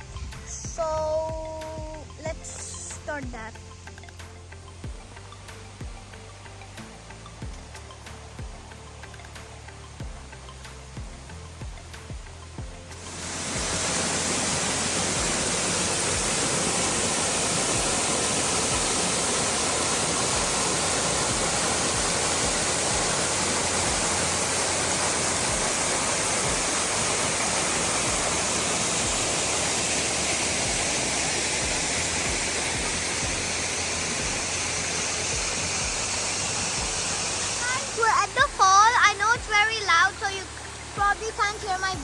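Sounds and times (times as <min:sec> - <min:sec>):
waterfall rushing: 0:00.0 - 0:42.0.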